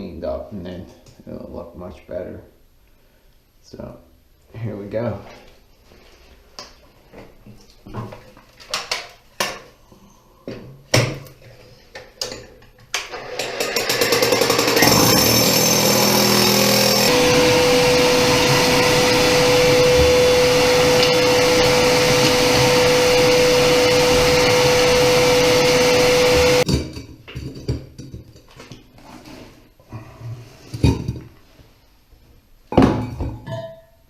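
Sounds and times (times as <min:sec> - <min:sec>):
shop vac motor whining: 0:13.1 - 0:26.7.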